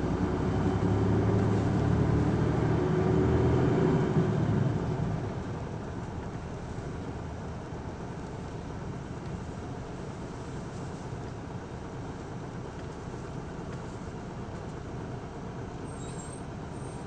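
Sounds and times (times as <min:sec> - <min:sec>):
bus engine rumble inside cabin: 0:00.0 - 0:17.0.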